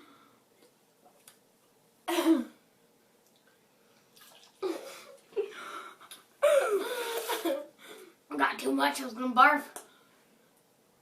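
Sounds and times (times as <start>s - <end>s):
girl burping: 2.1s - 2.6s, 6.4s - 7.7s.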